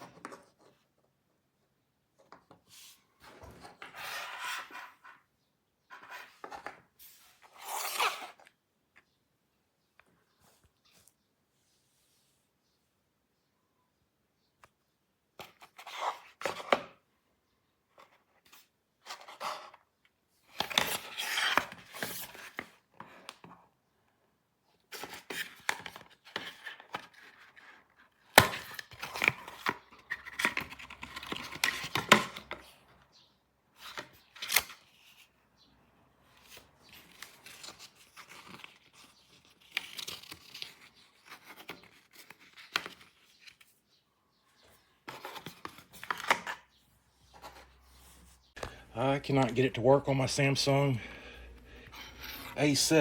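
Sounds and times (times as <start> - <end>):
packaging rustling and tearing: 37.0 - 43.6.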